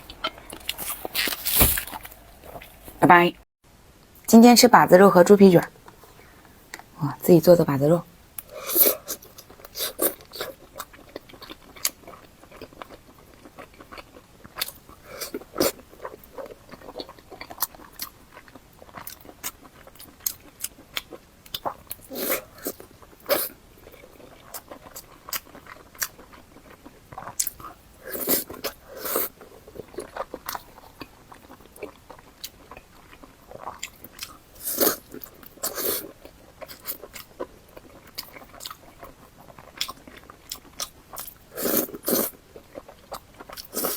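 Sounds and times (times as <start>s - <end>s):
biting and chewing: 0.0s - 2.9s.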